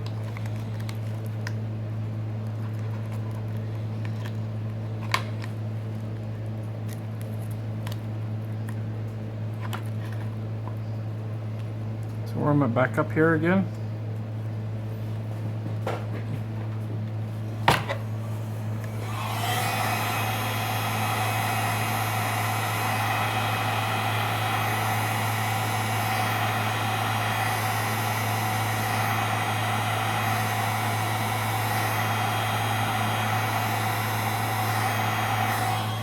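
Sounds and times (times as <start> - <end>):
heat gun blowing: 17.7 - 36.0.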